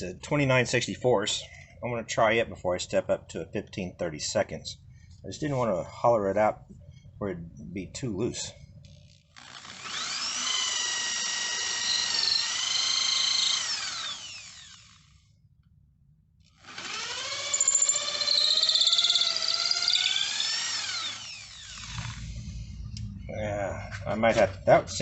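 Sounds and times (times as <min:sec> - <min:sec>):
electric drill motor whine: 0:09.0 - 0:15.3, 0:16.4 - 0:22.8.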